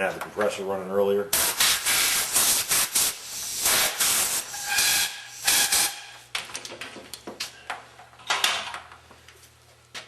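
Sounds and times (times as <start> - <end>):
compressed air blow gun hissing: 1.4 - 6.0.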